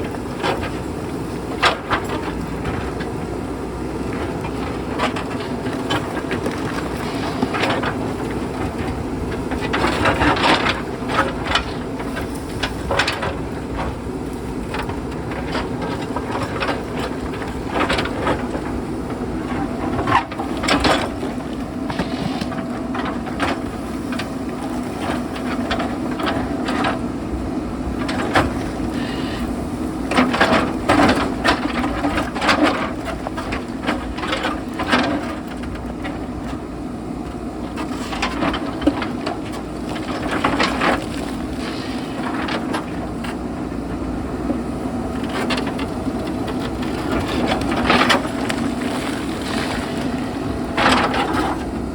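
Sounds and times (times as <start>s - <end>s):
diesel engine running under load: 0.0s - 51.9s
rocks clattering against steel bucket: 4.2s - 27.0s, 37.3s - 51.9s.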